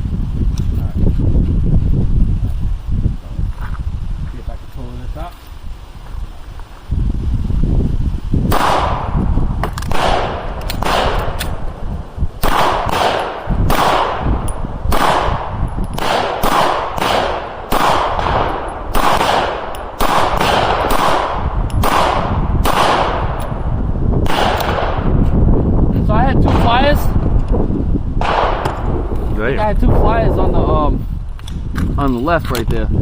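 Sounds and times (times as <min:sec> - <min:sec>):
handgun shots with echo: 0:08.5 - 0:11.6, 0:12.4 - 0:14.2, 0:14.9 - 0:23.4, 0:24.2 - 0:25.0.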